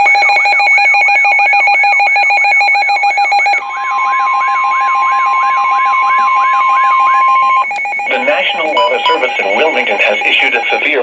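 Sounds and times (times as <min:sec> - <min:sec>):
steady warning tone: 0:00.0 - 0:11.0
rapid pulsing warbling beeps: 0:05.9 - 0:11.0.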